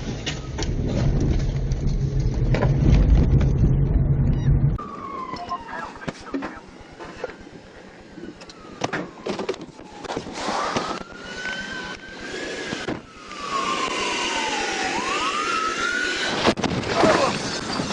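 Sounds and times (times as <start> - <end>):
traffic noise: 0.0 - 16.6
emergency siren wailing: 4.5 - 16.4.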